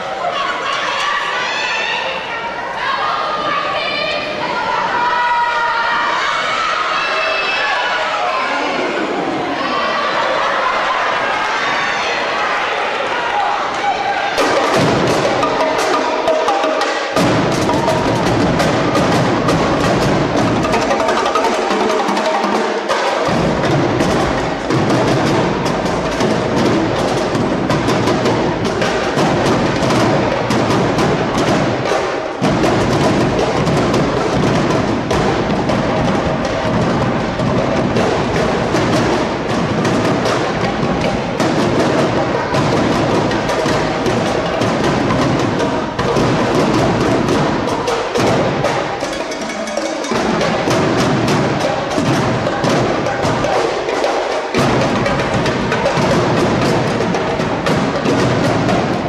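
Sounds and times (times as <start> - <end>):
drumline playing fast cadence: 0.0 - 59.0
rapid snare drum strokes: 14.3 - 59.0
bass drums: 17.1 - 21.6, 23.2 - 49.4, 54.6 - 59.0.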